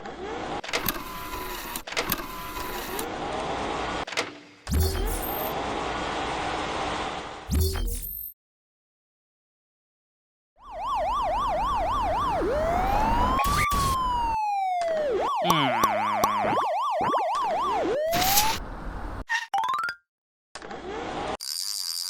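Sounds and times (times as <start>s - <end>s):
police car siren: 10.6s - 18.6s
cartoon sound effects: 12.6s - 18.6s.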